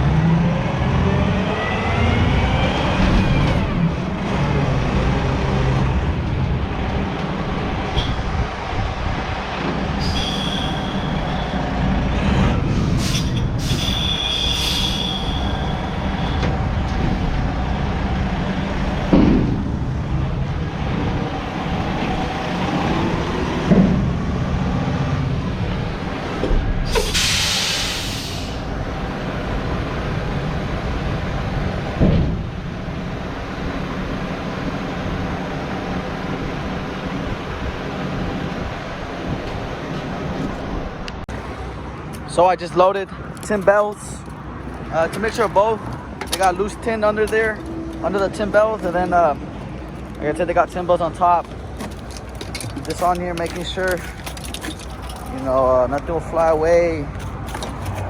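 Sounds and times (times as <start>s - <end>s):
high squeals: 9.9s - 12.3s, 13.0s - 16.5s
air brake hiss: 10.0s - 11.2s, 13.0s - 16.0s, 26.9s - 28.7s.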